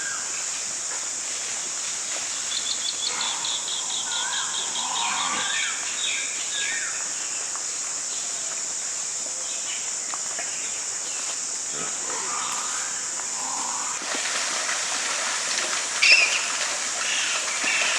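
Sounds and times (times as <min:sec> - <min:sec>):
high insect drone: 0:00.0 - 0:17.9
birds calling: 0:16.0 - 0:17.9.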